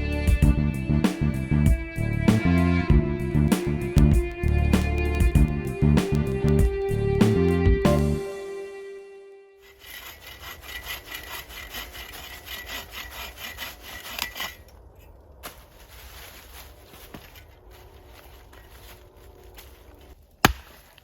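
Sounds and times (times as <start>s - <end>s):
hand saw cutting wood: 9.6s - 14.7s
faint handling sounds: 14.2s - 21.0s.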